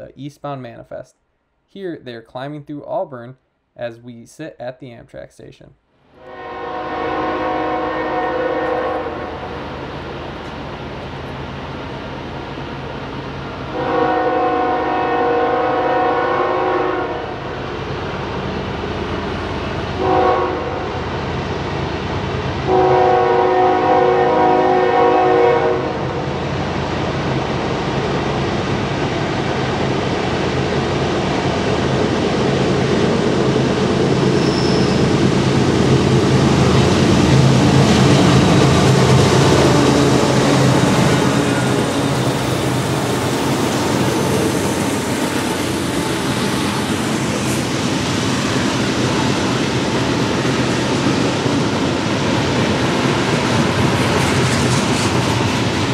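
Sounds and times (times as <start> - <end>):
locomotive air horn: 6.2 - 9.4, 13.7 - 17.4, 20.0 - 20.9, 22.7 - 26.0
heavy locomotive engine rumble: 6.2 - 55.9.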